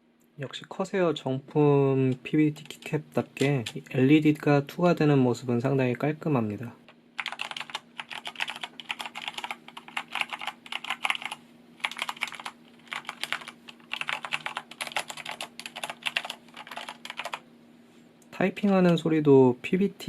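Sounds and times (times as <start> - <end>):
mechanical keyboard typing: 2.5 - 3.9, 7.2 - 17.4.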